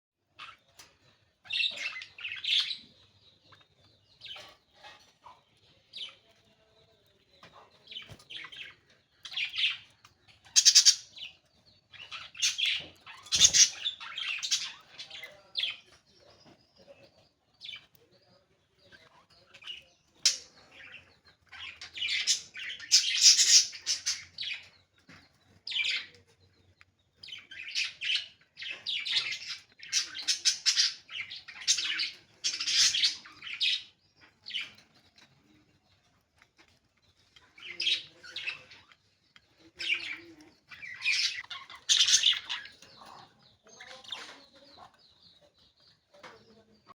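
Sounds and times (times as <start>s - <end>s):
budgerigars chirping: 7.9s - 15.7s, 19.4s - 24.7s, 27.3s - 34.8s, 39.7s - 45.0s.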